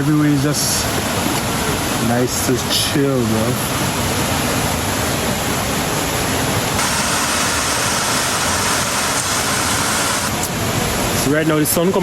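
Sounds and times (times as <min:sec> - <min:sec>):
waterfall rushing: 0:03.7 - 0:11.3.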